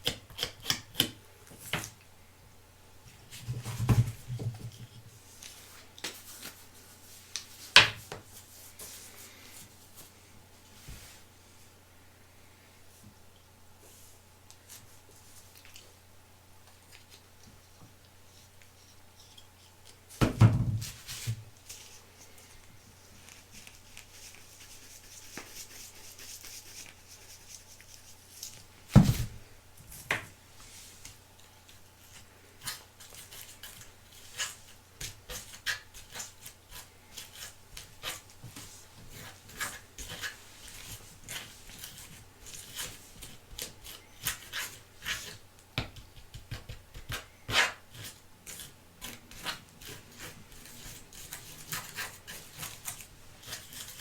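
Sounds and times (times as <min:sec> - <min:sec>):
soft rubbing by hand: 0:08.3 - 0:11.8, 0:30.5 - 0:31.2.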